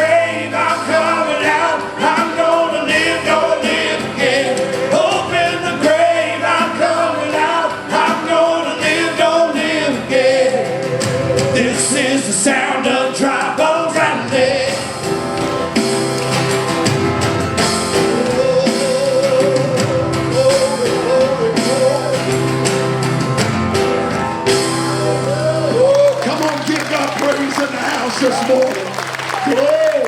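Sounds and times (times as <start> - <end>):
singers holding long notes: 0.0 - 15.3, 23.9 - 30.0
band playing worship music: 0.0 - 30.0.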